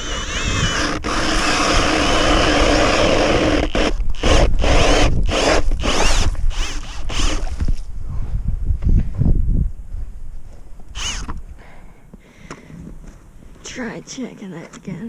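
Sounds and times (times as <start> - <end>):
drill boring through ice: 0.0 - 7.6, 11.0 - 11.3.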